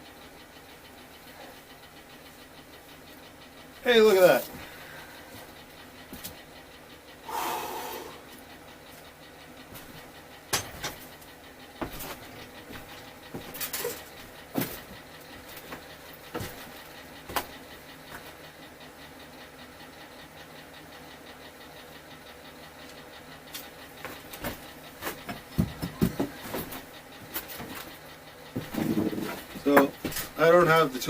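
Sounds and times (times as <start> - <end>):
steady low hum: 0.0 - 31.0
metal tools clicking and knocking: 10.5 - 11.1.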